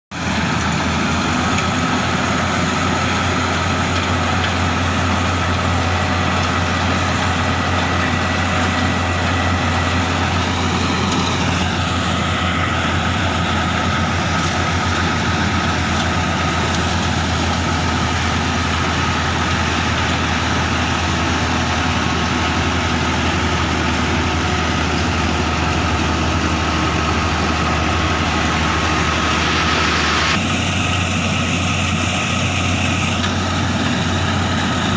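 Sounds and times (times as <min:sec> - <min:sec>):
constant machine whine: 0:00.1 - 0:34.9
harvester engine drone: 0:00.1 - 0:34.9.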